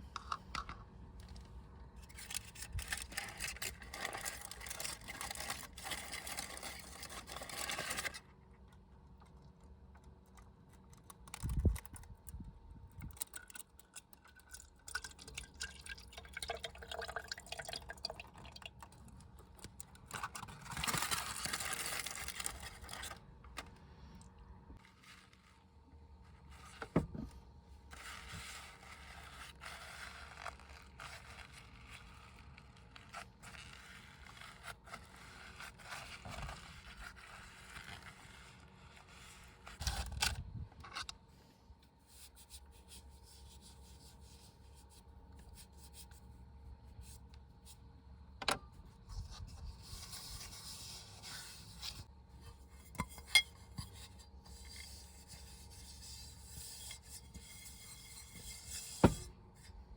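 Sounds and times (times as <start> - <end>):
scraping and rubbing: 2.0 - 8.2, 24.8 - 41.1, 49.1 - 59.9.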